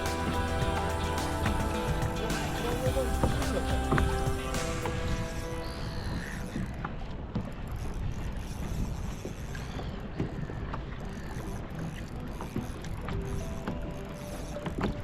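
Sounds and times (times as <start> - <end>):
wind on microphone: 0.0 - 12.1
water against hull: 0.0 - 15.0
small knocks and ticks: 6.2 - 15.0.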